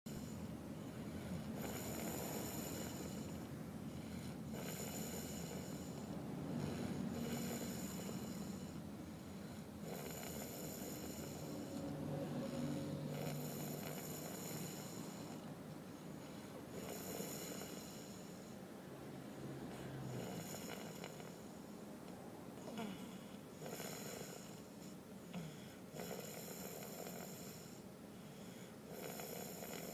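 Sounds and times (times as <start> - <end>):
person snoring: 0.1 - 8.8, 9.4 - 15.5, 16.2 - 18.4, 19.7 - 21.4, 22.6 - 24.7, 28.9 - 29.9.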